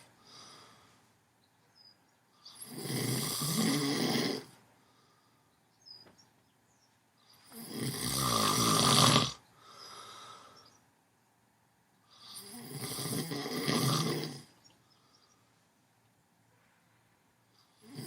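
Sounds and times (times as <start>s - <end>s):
soft breath out: 0.0s - 1.2s, 9.6s - 10.8s
deep rattling snoring: 2.5s - 4.5s, 7.5s - 9.4s, 12.2s - 14.6s.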